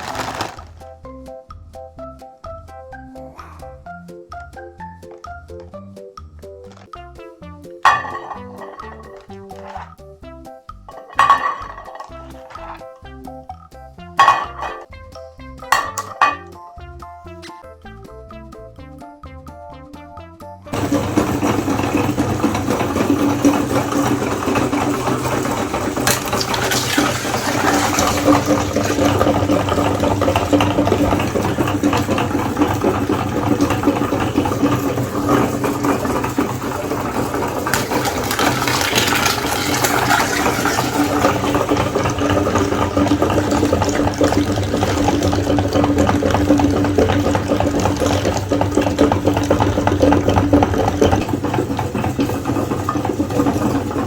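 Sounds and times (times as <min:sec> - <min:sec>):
meat grinder motor hum: 0:20.7 - 0:54.0.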